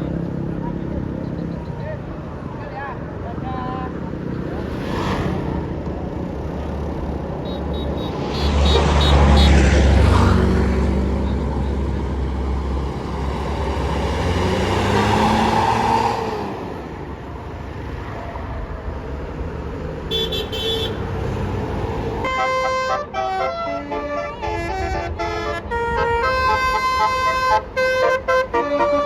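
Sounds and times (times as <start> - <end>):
bus diesel engine rumbling: 0.0 - 29.0
multi-tone bus horn: 7.4 - 10.4, 20.1 - 21.2, 22.2 - 29.0.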